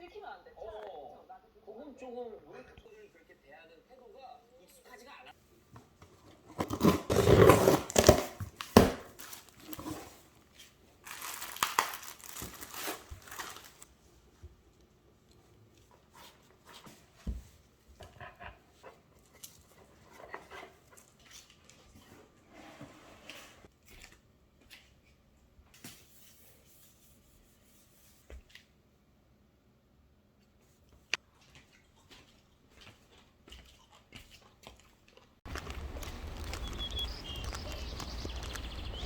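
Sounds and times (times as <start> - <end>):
material crinkling and tearing: 6.6 - 14.0, 35.5 - 39.0.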